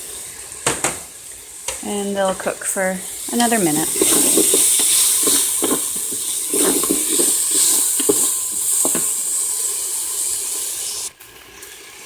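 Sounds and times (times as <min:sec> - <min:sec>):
onions sizzling in hot oil: 0:00.0 - 0:12.0
utensil scraping: 0:03.3 - 0:09.2.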